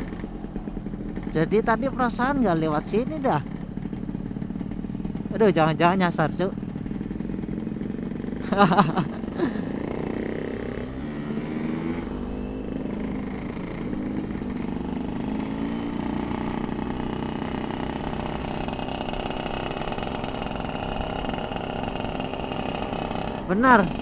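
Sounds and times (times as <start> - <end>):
two-stroke motorcycle engine riding: 0.0 - 24.0.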